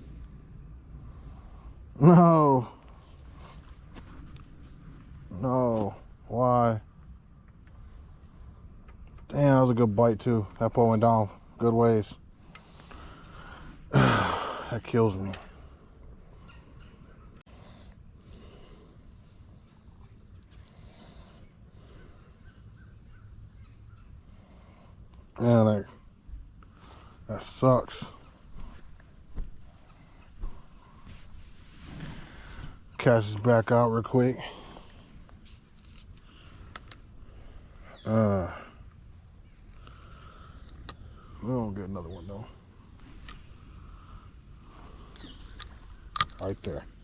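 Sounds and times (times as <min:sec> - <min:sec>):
insects chirring: 0:00.0 - 0:47.0
sharp clicks: 0:45.1 - 0:46.5.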